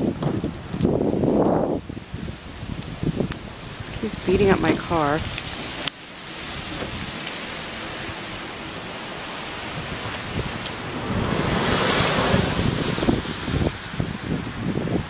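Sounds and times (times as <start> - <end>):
meltwater dripping: 0.0 - 12.0
wind buffeting microphone: 0.0 - 15.0
wind gusting: 0.0 - 15.0.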